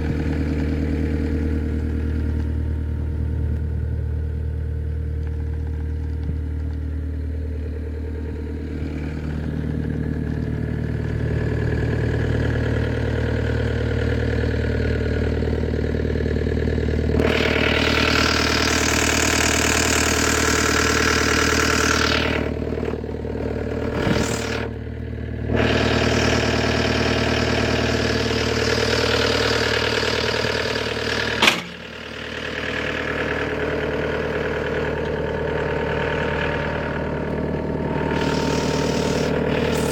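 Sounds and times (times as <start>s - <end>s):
diesel engine running: 0.0s - 39.9s
sharp click: 31.4s - 31.8s.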